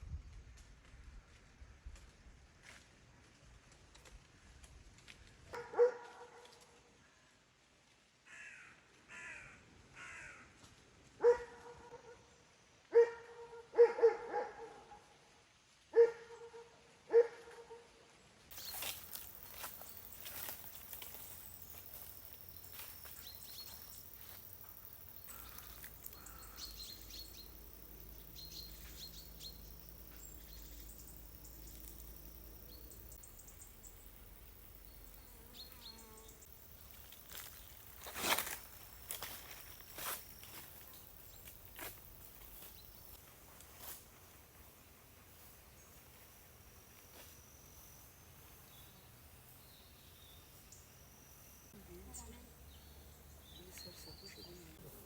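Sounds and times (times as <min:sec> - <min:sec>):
dog barking: 0:05.6 - 0:06.6, 0:11.2 - 0:12.3, 0:12.9 - 0:15.1, 0:15.9 - 0:17.9
small birds chirping: 0:18.5 - 0:43.2, 0:48.0 - 0:55.0.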